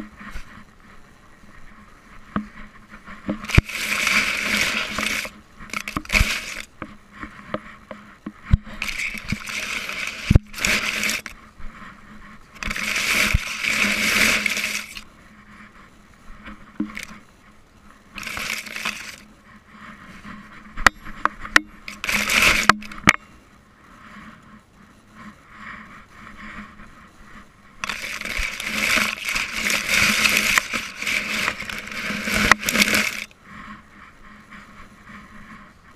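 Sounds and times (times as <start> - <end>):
camera rubbing against dog: 2.5 - 7.7, 8.7 - 15.1, 16.4 - 17.2, 18.2 - 23.2, 27.8 - 35.7.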